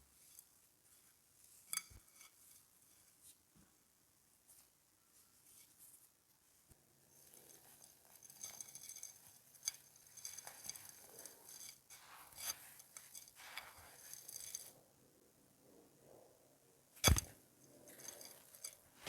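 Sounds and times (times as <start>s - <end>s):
clay snapping: 17.0s - 17.3s
dry clay crumbling and crunching: 17.0s - 17.3s.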